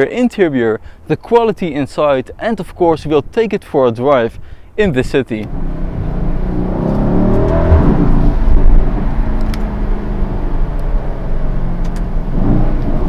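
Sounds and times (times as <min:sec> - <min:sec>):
car engine rumbling: 0:04.8 - 0:13.0.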